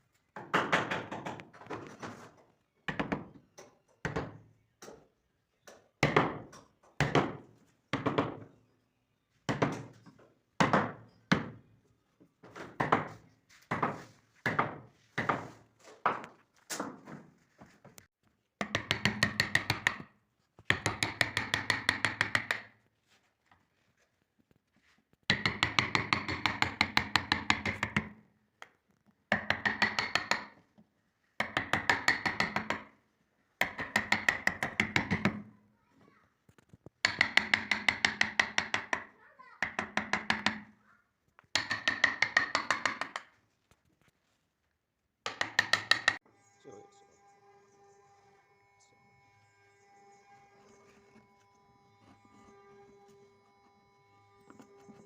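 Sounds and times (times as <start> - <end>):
mallet knocking chisel: 18.6 - 20.1, 20.7 - 22.7, 25.3 - 28.2, 29.3 - 30.6, 31.4 - 32.9, 33.6 - 35.4, 37.0 - 40.7, 41.5 - 43.3, 45.2 - 46.2.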